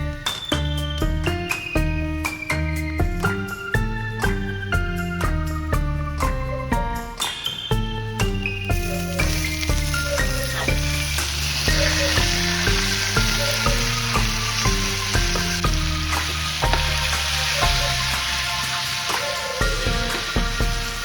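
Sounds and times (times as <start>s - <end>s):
background music with bass line: 0.0s - 21.0s
food sizzling in a pan: 8.7s - 21.0s.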